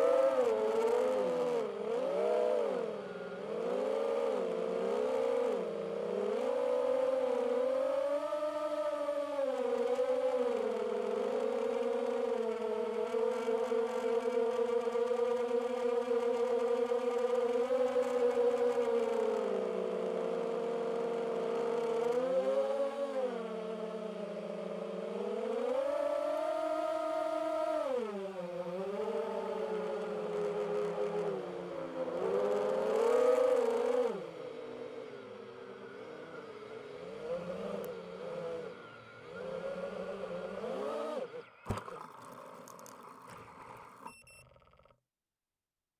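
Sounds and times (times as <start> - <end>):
drone propellers whining: 16.4 - 44.9.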